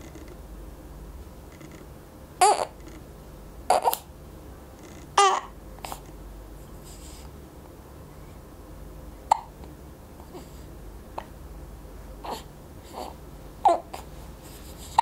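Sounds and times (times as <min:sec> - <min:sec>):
baby hiccuping: 0:02.4 - 0:02.8, 0:03.7 - 0:04.0, 0:09.3 - 0:09.5.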